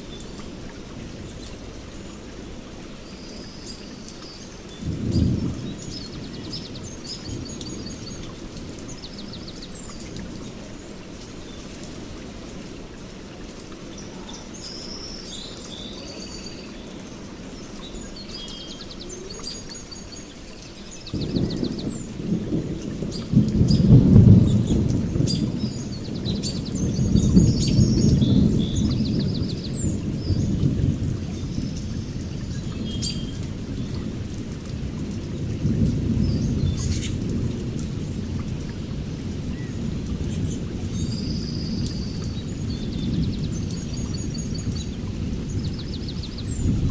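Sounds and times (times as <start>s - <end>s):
low rumble of thunder: 0.0s - 15.0s, 15.8s - 46.9s
steady rain: 0.0s - 46.9s
birds chirping: 13.7s - 30.7s, 39.5s - 46.9s.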